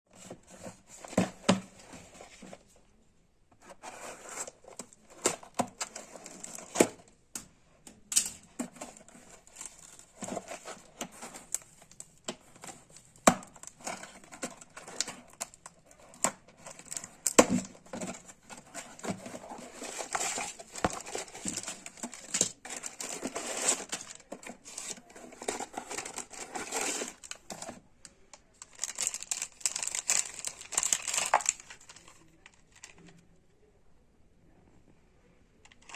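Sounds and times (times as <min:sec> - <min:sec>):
packaging crinkling and tearing: 0:08.8 - 0:27.8, 0:28.6 - 0:33.1.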